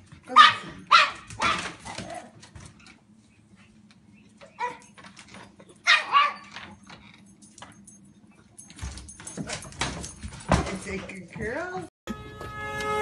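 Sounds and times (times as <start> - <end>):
dog barking: 0.3 - 1.8, 4.6 - 4.8, 5.8 - 6.5.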